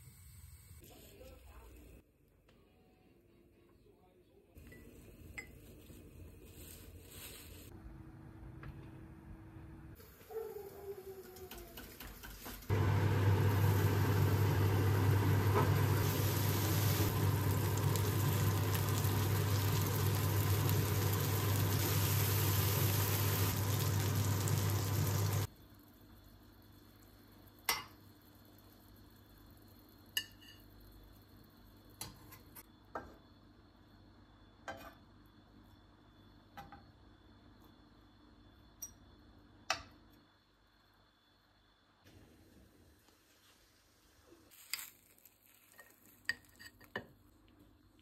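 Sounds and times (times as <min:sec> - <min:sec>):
electric appliance motor humming: 0:12.7 - 0:25.5.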